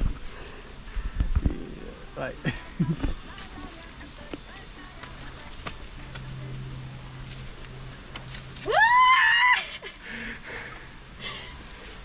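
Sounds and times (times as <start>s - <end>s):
person's loud high cry: 8.7s - 9.9s.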